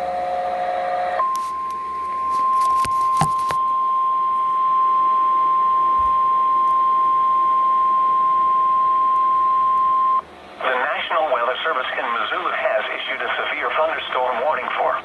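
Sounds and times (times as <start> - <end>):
steady high alarm tone: 0.0 - 10.2.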